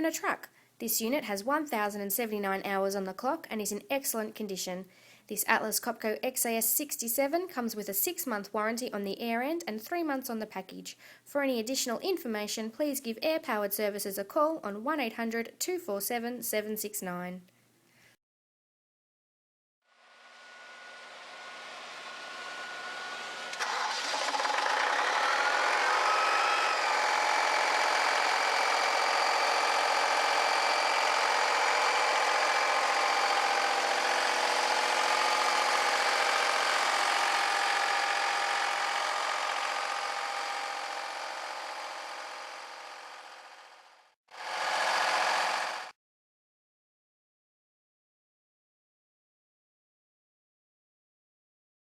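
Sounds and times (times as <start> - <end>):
diesel air compressor running: 20.2 - 46.0.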